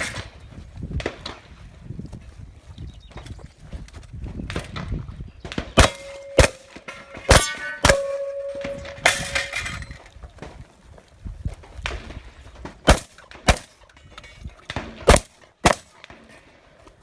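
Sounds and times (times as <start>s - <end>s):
shotgun shots: 4.5s - 9.4s, 12.8s - 13.8s, 14.7s - 16.4s
steel target ringing: 5.8s - 9.9s
metallic clang: 5.8s - 10.0s.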